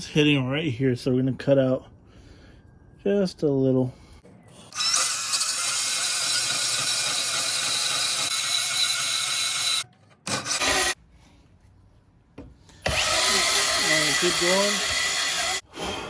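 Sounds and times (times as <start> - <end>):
power tool cutting steel plate: 4.7 - 11.0, 12.9 - 15.6.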